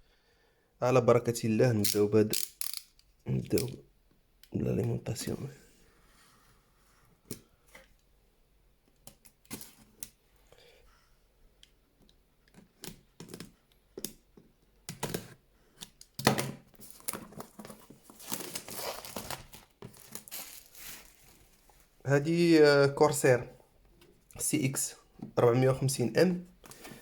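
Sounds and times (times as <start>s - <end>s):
packaging rustling and crinkling: 16.7s - 22.0s.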